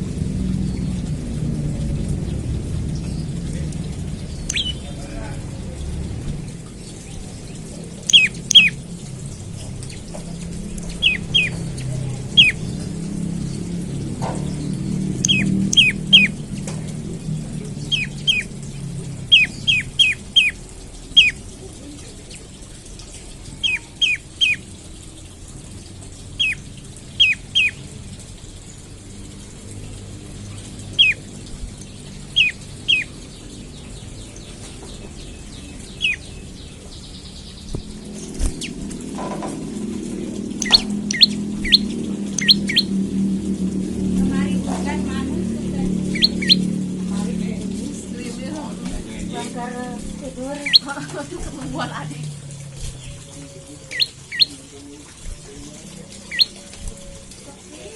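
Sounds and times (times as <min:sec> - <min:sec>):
bird calling sharp notes: 0:04.4 - 0:05.2, 0:08.0 - 0:08.9, 0:09.8 - 0:13.0, 0:15.1 - 0:16.5, 0:17.8 - 0:21.4, 0:23.5 - 0:24.7, 0:26.4 - 0:27.8, 0:30.9 - 0:31.3, 0:32.2 - 0:33.2, 0:35.4 - 0:36.3, 0:40.2 - 0:43.1, 0:45.8 - 0:46.9, 0:50.6 - 0:51.0, 0:52.8 - 0:55.1, 0:55.8 - 0:57.6.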